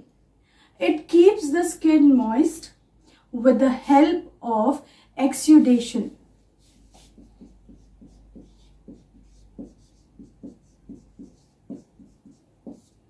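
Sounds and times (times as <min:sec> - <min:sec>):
soft tapping: 0:06.9 - 0:13.0.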